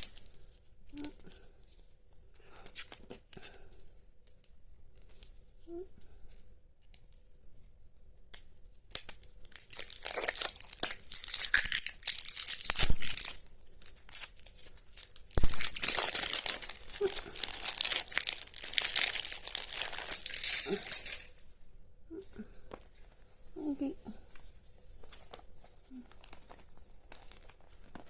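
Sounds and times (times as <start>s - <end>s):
plastic packaging tearing and crinkling: 0.0s - 1.2s, 8.9s - 21.5s, 25.0s - 28.0s.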